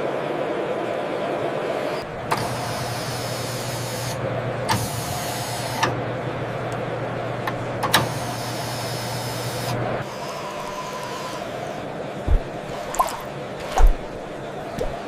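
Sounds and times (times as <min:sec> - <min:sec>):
small electric motor running: 0:08.5 - 0:11.8.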